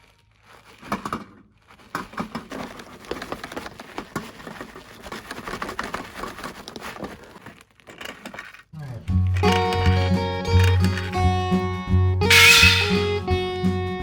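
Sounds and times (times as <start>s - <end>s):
toy cars clicking against plastic: 0.8s - 11.2s.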